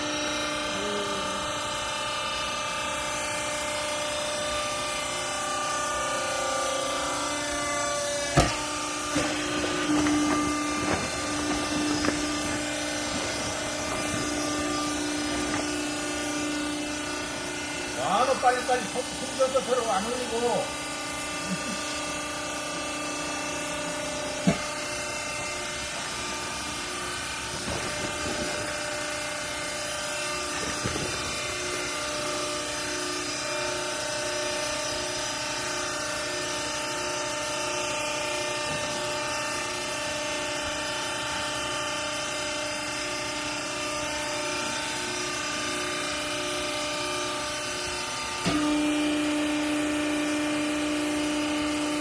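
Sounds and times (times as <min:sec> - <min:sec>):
hydraulic motor and pump hum: 0:00.0 - 0:52.0.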